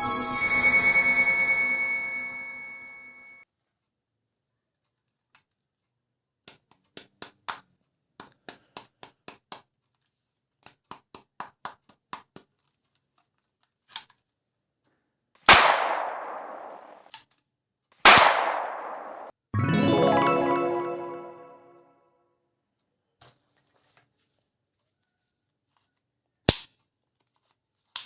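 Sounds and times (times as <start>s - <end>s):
gunshot blasts with echo: 15.5s - 17.0s, 18.1s - 19.3s.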